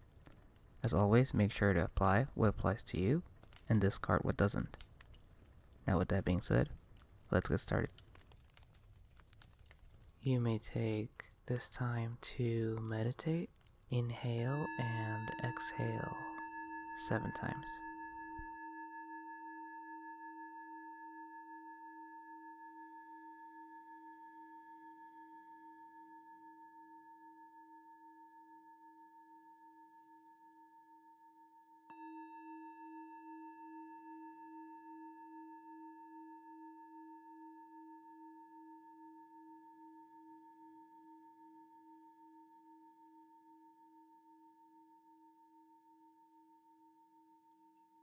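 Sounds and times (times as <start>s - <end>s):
singing bowl ringing: 14.0s - 48.0s.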